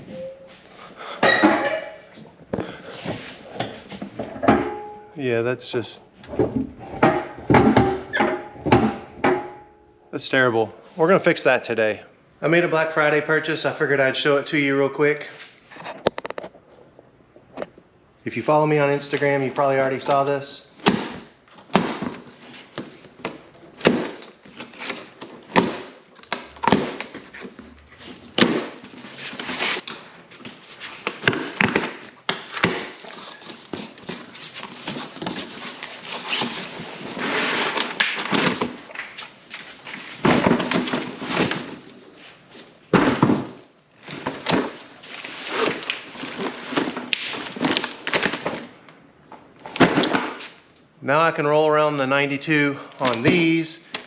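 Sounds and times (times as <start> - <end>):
thunks and knocks: 6.3 - 9.6
packaging rustling: 44.0 - 48.8.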